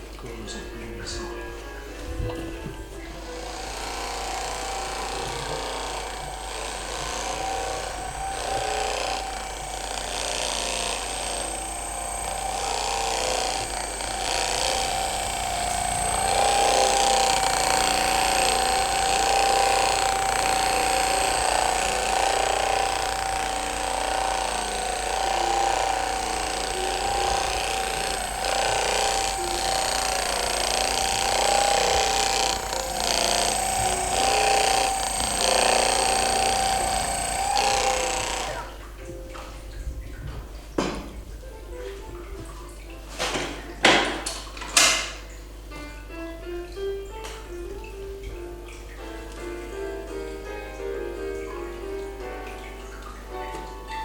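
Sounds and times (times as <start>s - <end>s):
electric massager motor whine: 2.1s - 38.8s.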